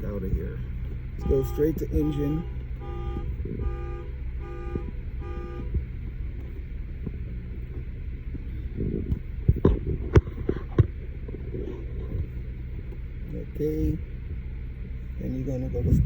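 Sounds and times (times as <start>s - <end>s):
steady low hum: 0.0s - 16.0s
car warning chime beeping: 1.0s - 6.3s.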